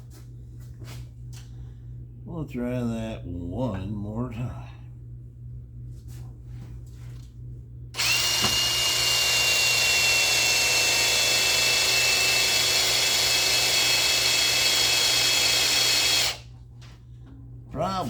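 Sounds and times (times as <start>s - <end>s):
power drill cutting steel: 8.0s - 16.4s.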